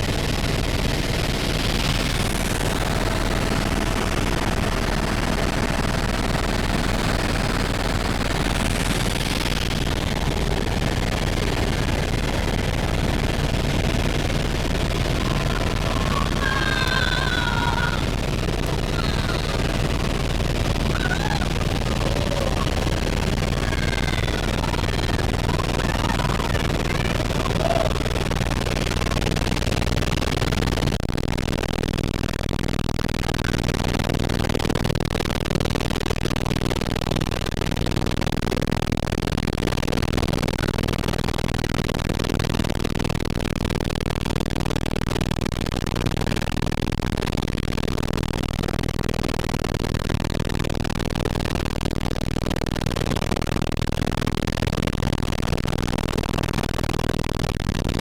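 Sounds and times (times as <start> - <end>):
constant low hum: 0.0 - 30.8
helicopter in flight: 0.0 - 30.9.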